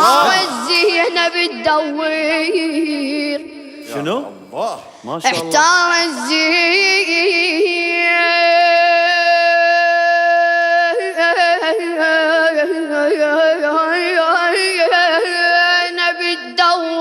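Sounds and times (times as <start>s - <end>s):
boy chanting solo: 0.0s - 1.8s, 5.3s - 6.5s.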